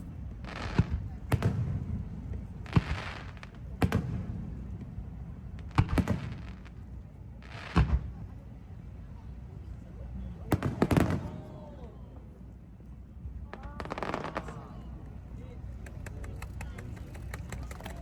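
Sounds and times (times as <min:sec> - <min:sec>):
fireworks bursting with bangs: 0:00.4 - 0:06.8, 0:07.5 - 0:08.2, 0:10.5 - 0:11.4, 0:13.5 - 0:14.9.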